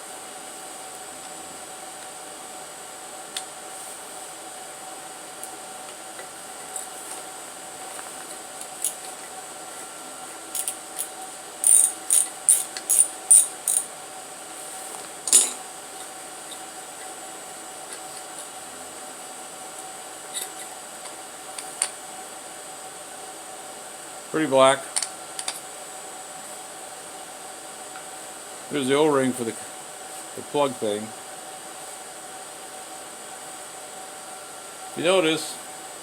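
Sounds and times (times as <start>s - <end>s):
faint steady hum: 0.0s - 36.0s
socket ratchet clicking: 10.6s - 13.9s.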